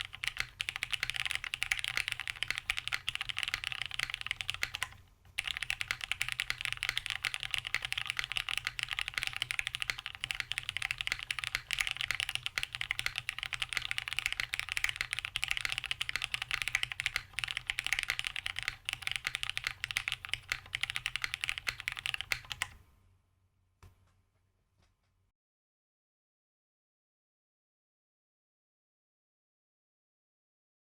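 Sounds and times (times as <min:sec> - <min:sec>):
typing on mechanical keyboard: 0:00.0 - 0:22.8.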